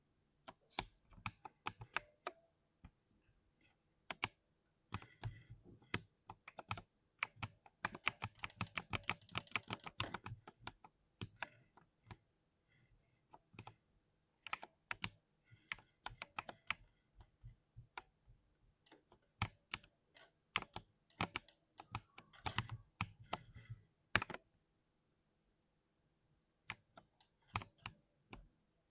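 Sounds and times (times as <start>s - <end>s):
mechanical keyboard typing: 4.1s - 11.5s, 18.9s - 23.5s.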